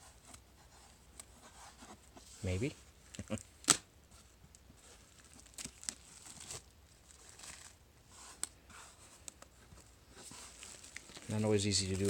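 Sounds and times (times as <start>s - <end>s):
packaging rustling and scraping: 4.2s - 12.0s.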